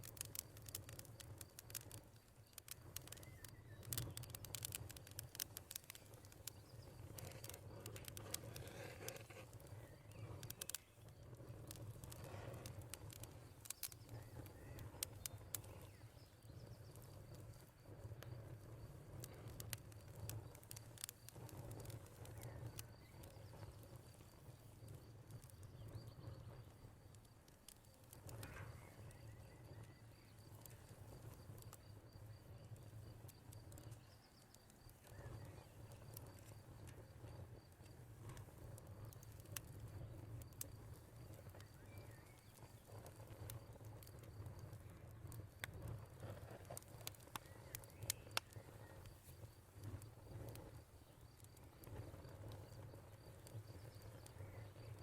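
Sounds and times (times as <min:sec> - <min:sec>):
cricket trilling: 0:00.0 - 0:55.0
wood fire crackling and popping: 0:00.0 - 0:55.0.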